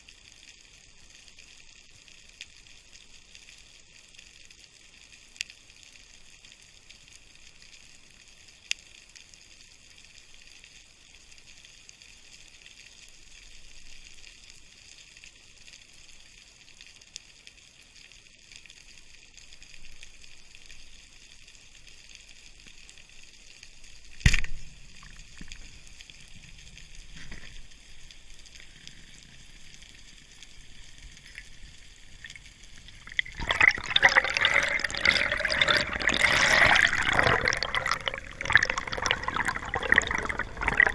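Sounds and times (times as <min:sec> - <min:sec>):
water splashing and bubbling: 0:24.0 - 0:40.9.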